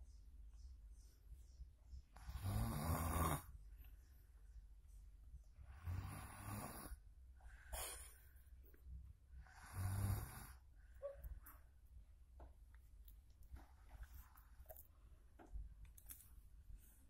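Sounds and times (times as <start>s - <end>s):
quiet breathing: 0.0s - 12.2s, 16.4s - 17.0s
child snoring: 2.2s - 3.5s, 5.8s - 7.0s, 9.5s - 10.6s.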